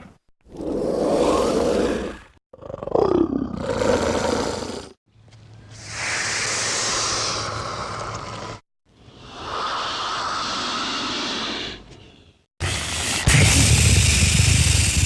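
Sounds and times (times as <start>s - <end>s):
long breathy hiss: 5.8s - 15.0s.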